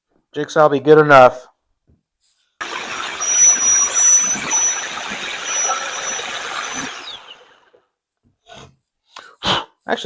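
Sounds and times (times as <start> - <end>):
jigsaw cutting plywood: 2.6 - 7.8.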